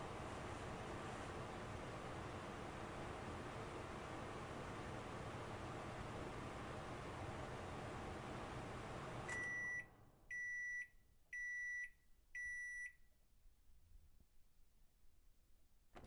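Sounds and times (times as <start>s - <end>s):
microwave oven humming: 0.0s - 10.7s
microwave beeps: 9.3s - 13.0s.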